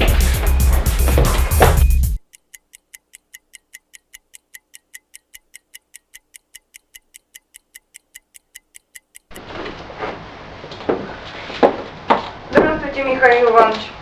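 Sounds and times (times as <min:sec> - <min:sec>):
room noise: 0:00.0 - 0:03.5, 0:08.4 - 0:14.0
rapid even ticking: 0:01.8 - 0:09.4.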